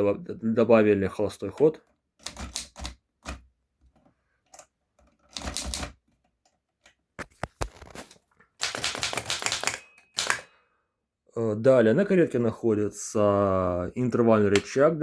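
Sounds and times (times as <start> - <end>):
typewriter clattering: 5.3 - 6.0, 7.7 - 10.5.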